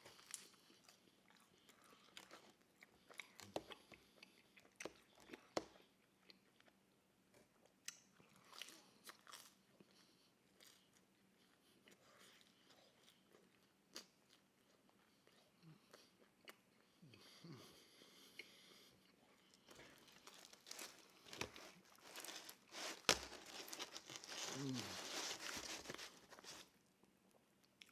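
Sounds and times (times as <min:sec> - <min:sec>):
person chewing food: 0:00.0 - 0:27.9.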